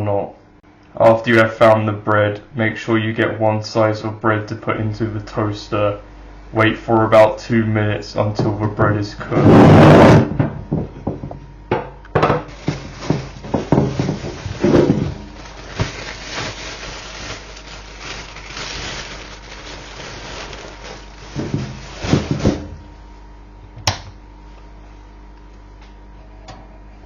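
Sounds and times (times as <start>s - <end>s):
kitchen knocks and clatters: 10.3s - 15.2s
rustling: 12.5s - 22.7s.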